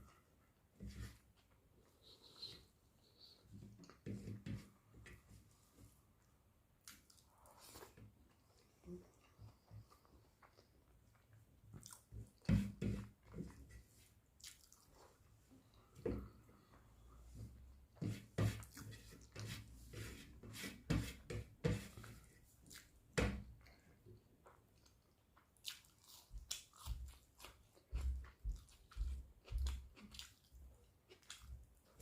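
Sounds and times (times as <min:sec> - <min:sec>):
chewing with wet smacks: 0:08.3 - 0:13.6, 0:14.4 - 0:15.8, 0:24.4 - 0:32.0.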